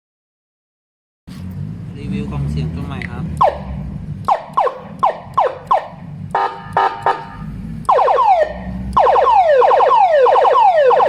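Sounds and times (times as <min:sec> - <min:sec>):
electronic siren switching tones: 0:03.3 - 0:11.0.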